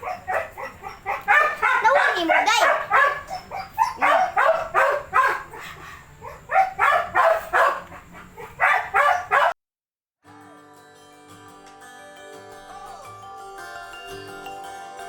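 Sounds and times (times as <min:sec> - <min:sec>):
dog barking: 0:00.0 - 0:09.6
soft plucked background music: 0:10.3 - 0:15.0.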